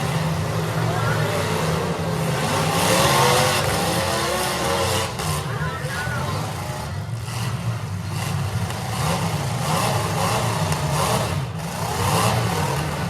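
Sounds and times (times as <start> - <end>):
car engines revving: 0.0 - 13.0.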